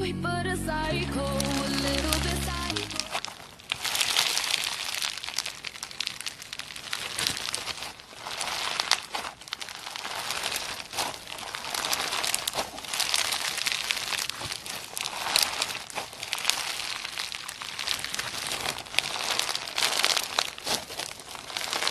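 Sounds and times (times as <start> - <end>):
slime crackling and popping: 1.2 - 21.9.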